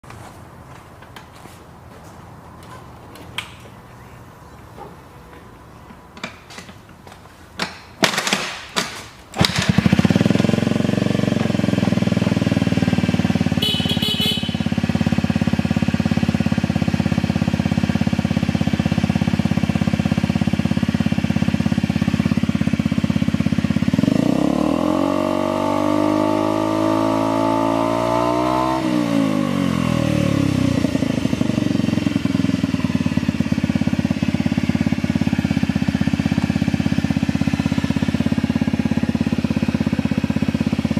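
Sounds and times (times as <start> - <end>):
scooter engine cranking: 5.9 - 16.6
scooter engine idling and revving: 9.4 - 40.9.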